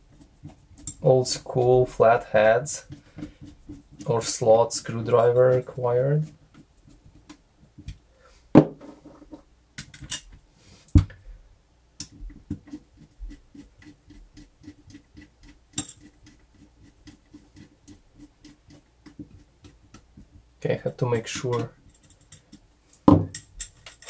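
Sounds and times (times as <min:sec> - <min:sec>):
screwdriver scraping metal parts: 0:21.2 - 0:22.6, 0:23.4 - 0:24.0.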